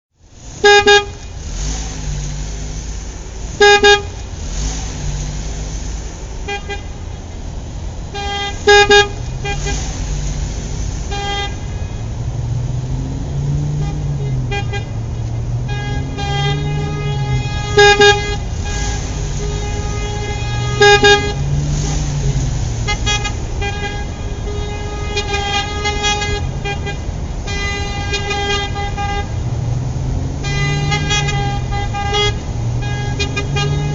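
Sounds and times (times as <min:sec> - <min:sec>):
car horns honking: 0:00.5 - 0:33.9.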